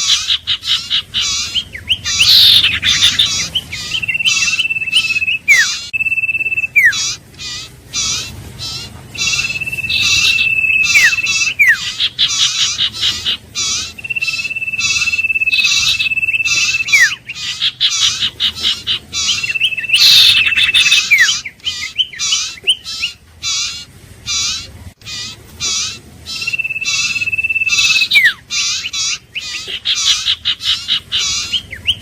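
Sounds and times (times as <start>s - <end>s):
bird trilled whistle: 0.0s - 23.8s, 25.2s - 32.0s
fast repeated bird chirping: 0.0s - 32.0s.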